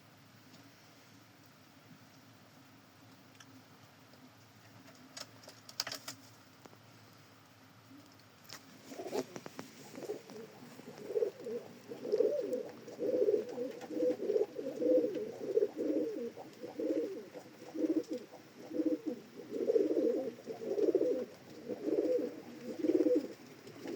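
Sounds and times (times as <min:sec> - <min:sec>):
pigeon cooing: 0:08.8 - 0:23.9.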